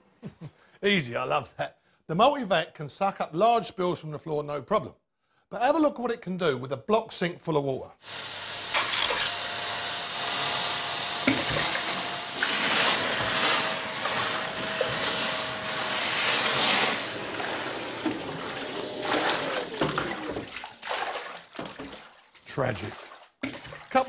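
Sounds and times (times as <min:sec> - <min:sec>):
vacuum motor whine: 0:08.1 - 0:20.0
vacuum slurping water: 0:10.3 - 0:22.2.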